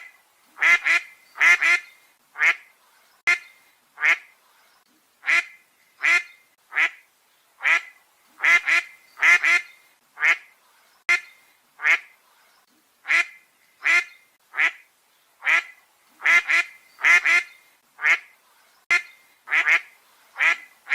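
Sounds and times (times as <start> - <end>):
duck quacking: 0.6 - 2.7, 3.3 - 4.3, 5.2 - 7.0, 7.6 - 10.5, 11.1 - 12.1, 13.0 - 14.8, 15.4 - 18.3, 18.9 - 20.9.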